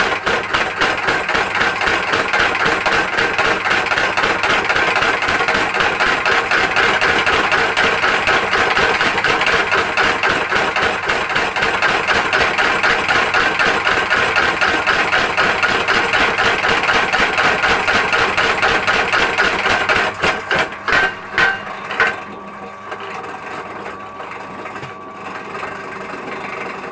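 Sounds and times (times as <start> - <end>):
mechanical forging hammer strikes: 18.7 - 22.2.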